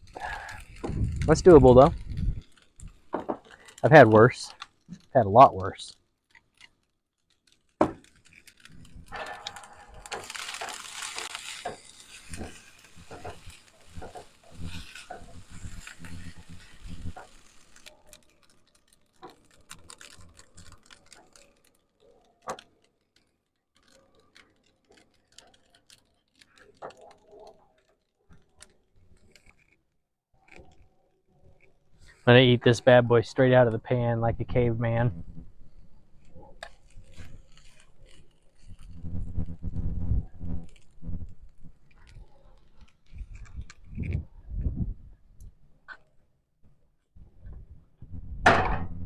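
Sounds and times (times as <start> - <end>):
rustling and handling noises: 0.0 - 32.8, 34.9 - 49.0
small clicks and knocks: 5.9 - 29.8.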